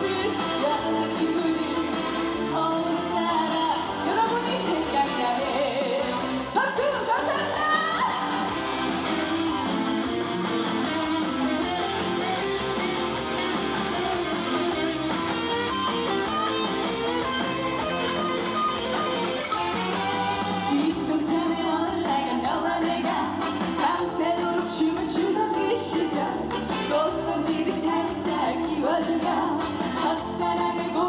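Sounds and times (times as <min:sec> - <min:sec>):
woman singing: 0:00.0 - 0:08.6, 0:20.5 - 0:31.0
band backing track: 0:00.0 - 0:31.0
guitar: 0:00.0 - 0:31.0.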